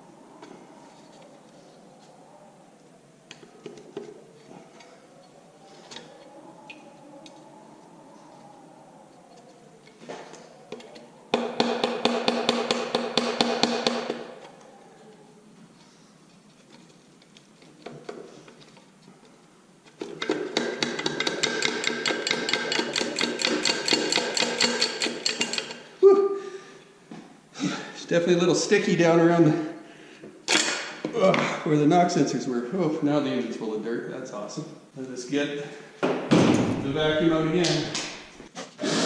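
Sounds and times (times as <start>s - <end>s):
impact wrench hammering: 11.4s - 14.2s, 20.5s - 25.8s.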